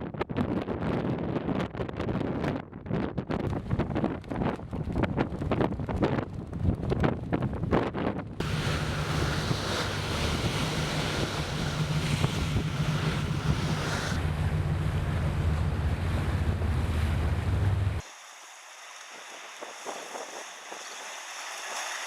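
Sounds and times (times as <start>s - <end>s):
wind buffeting microphone: 0.0s - 18.0s, 19.3s - 22.0s
low rumble and water noise: 3.4s - 22.0s.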